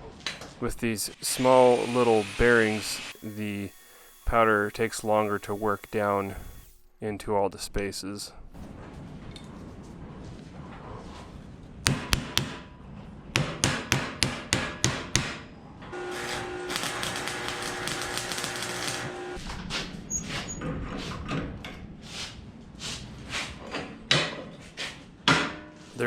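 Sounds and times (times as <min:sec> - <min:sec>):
welding crackle with hum: 0:16.0 - 0:19.4.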